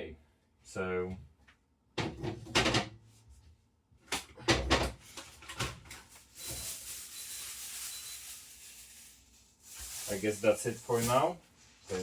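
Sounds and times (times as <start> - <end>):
clunks and knocks at fridge: 2.0 - 3.0, 4.3 - 5.0
faint high fridge beep: 6.4 - 8.4
steady hiss: 9.7 - 12.0.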